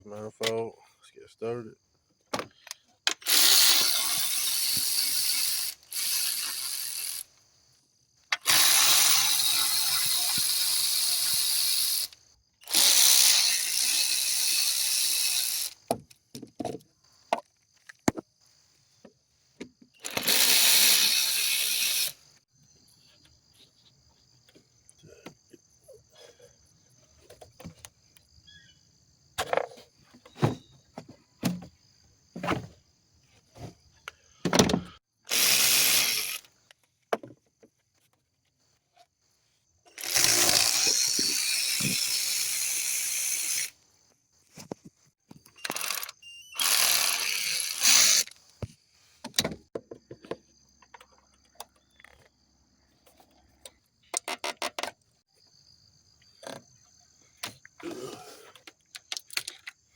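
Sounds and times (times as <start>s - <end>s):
power tool whirring hiss: 3.2s - 7.3s, 8.4s - 15.8s, 20.0s - 22.2s, 35.3s - 36.5s, 39.9s - 43.8s, 45.6s - 48.4s
short mechanical clicks: 45.6s - 48.4s.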